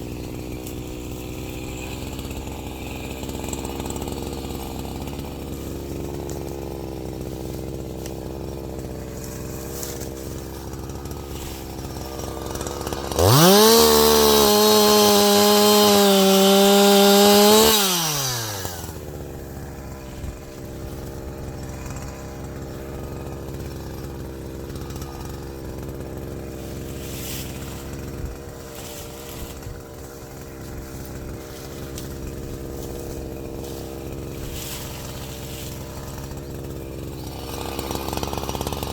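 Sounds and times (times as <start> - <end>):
chainsaw idling and revving: 0.0 - 38.9.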